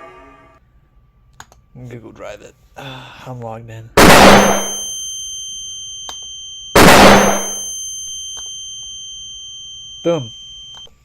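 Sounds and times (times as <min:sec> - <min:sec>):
loud blast: 0:04.0 - 0:04.8, 0:06.8 - 0:07.7
high ringing tone: 0:04.0 - 0:11.0.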